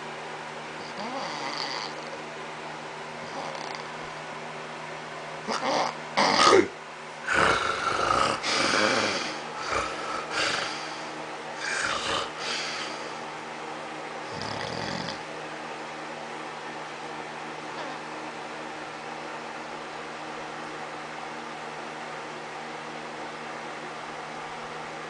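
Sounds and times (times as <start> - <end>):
steady low hum: 0.0 - 25.0
person snoring and snorting: 0.8 - 2.2, 3.2 - 4.0, 5.5 - 13.2, 14.3 - 15.3.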